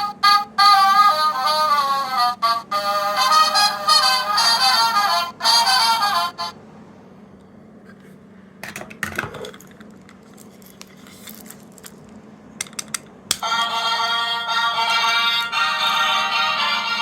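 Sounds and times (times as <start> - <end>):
pitched electronic toy sound: 0.0 - 6.5
plastic toys clicking and clattering: 8.6 - 13.4.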